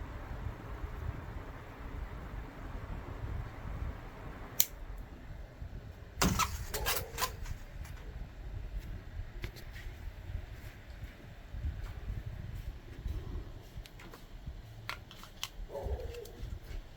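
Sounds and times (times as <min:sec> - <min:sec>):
low rumble: 0:10.0 - 0:14.9.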